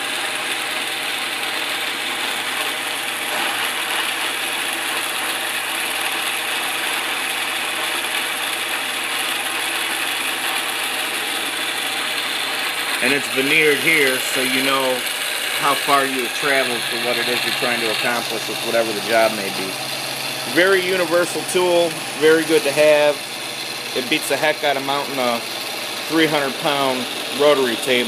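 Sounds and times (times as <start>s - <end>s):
milling machine whine: 0.0s - 28.0s.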